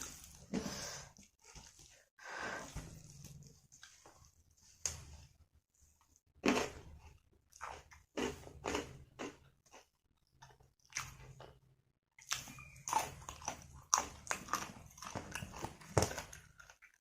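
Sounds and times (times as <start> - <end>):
person chewing food: 6.4 - 17.0.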